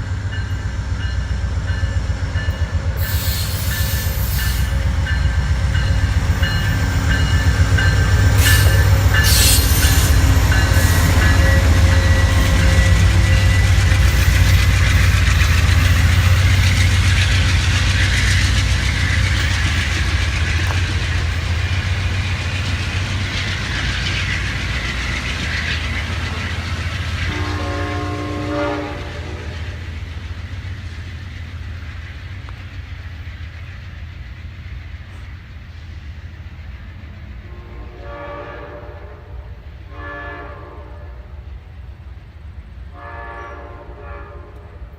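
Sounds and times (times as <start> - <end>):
train wheels clattering on rails: 0.0 - 35.5
train horn: 7.3 - 14.3, 27.2 - 29.8, 37.4 - 41.4, 42.9 - 44.9.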